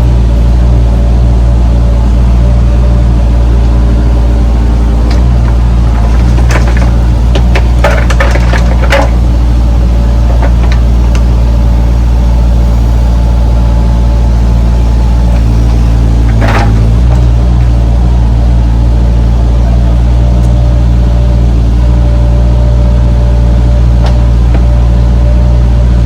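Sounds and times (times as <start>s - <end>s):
excavator diesel engine running: 0.0s - 26.0s
sharp metal clanks and knocks: 16.2s - 17.3s.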